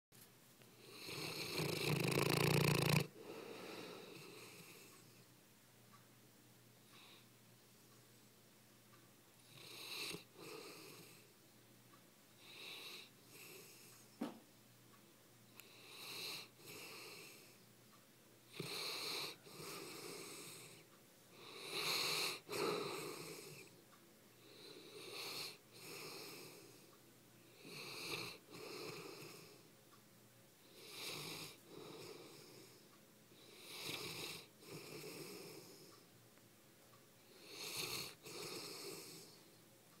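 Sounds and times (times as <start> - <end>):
dog snoring: 0.8 - 5.2, 9.4 - 11.3, 12.4 - 14.1, 15.6 - 17.6, 18.5 - 23.8, 24.4 - 29.7, 30.6 - 32.8, 33.4 - 36.0, 37.2 - 39.5.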